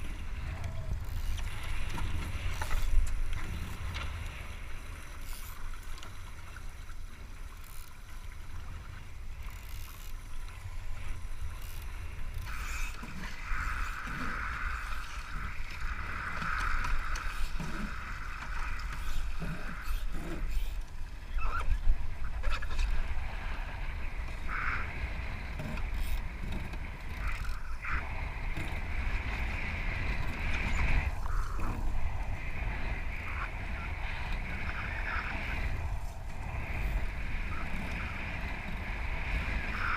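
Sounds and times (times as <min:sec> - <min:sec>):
wind buffeting microphone: 0:10.7 - 0:39.9.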